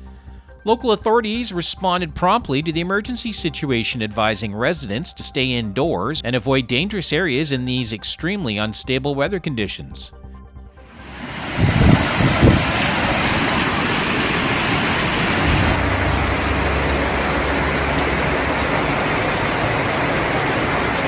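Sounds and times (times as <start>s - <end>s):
heavy rain pouring: 10.9s - 21.0s
low thumps: 15.3s - 20.9s.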